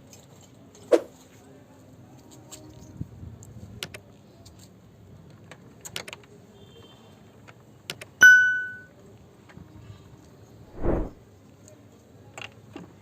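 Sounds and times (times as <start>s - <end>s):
bell-like ding: 8.2s - 8.9s.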